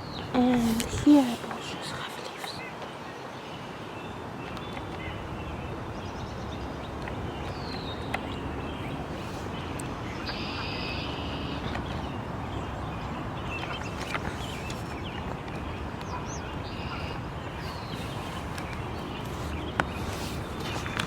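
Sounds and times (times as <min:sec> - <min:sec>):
birds calling: 0:06.6 - 0:21.0.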